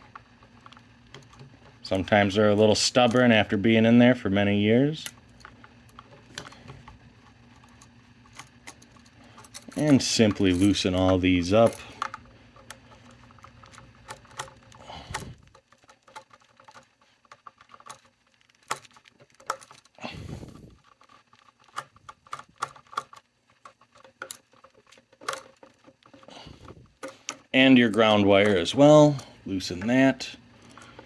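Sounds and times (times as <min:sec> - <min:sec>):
soft rustling handling: 0:00.0 - 0:31.0
screwdriver clicking on metal screws: 0:07.5 - 0:20.0.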